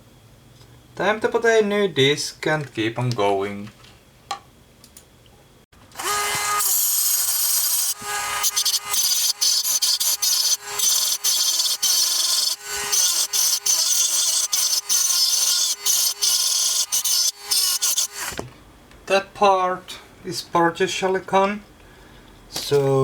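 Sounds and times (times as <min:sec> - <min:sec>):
rotary tool motor whine: 0:05.9 - 0:18.4.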